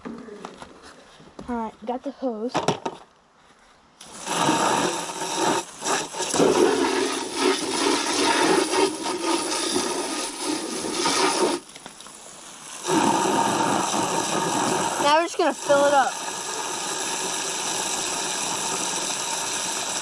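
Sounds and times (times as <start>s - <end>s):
hose water hitting container: 4.0s - 20.0s.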